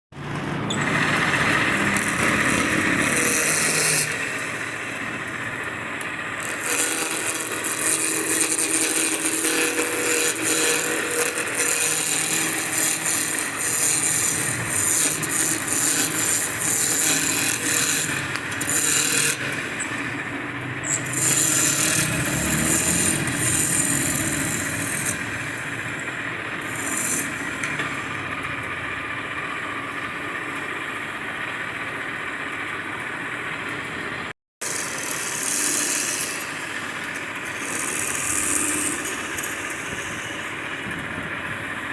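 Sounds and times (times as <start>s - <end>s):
tool scraping wood: 0.3s - 28.4s, 34.6s - 41.2s.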